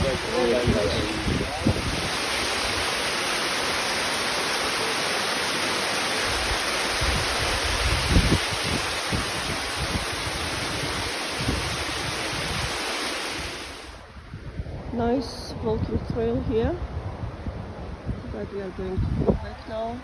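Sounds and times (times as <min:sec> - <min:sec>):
wind buffeting microphone: 0:00.0 - 0:03.2, 0:06.2 - 0:20.0
waterfall rushing: 0:00.0 - 0:14.0.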